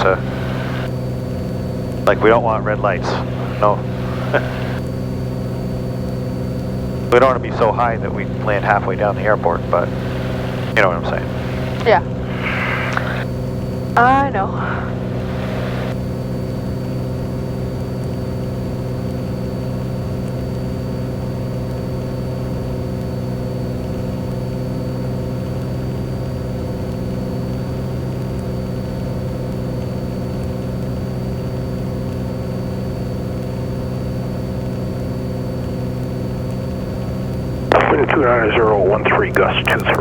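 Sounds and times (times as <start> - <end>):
thin high whine: 0.0 - 17.6, 34.2 - 40.0
aircraft engine droning in cabin: 0.0 - 40.0.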